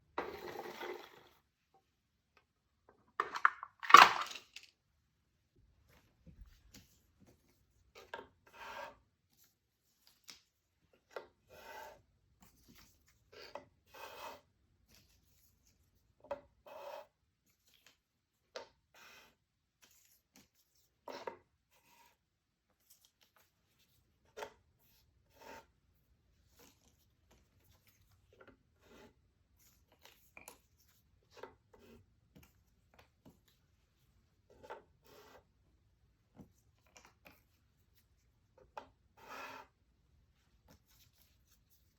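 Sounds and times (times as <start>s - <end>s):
puzzle pieces rubbing and clicking: 3.2s - 4.7s.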